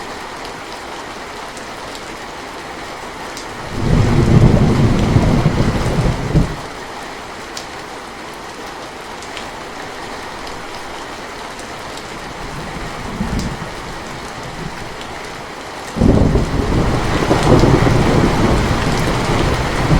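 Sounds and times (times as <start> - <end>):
rain hissing: 2.7 - 6.9, 9.2 - 19.9
thunder rumbling: 3.6 - 6.7, 12.4 - 15.0, 16.0 - 19.9.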